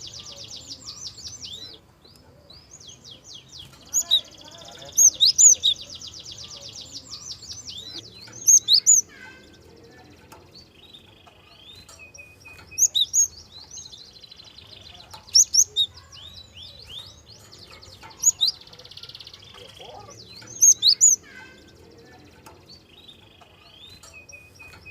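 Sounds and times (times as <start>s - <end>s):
bird twittering: 2.8s - 9.7s, 10.6s - 24.9s
bird trilling: 3.8s - 9.5s, 11.1s - 21.7s.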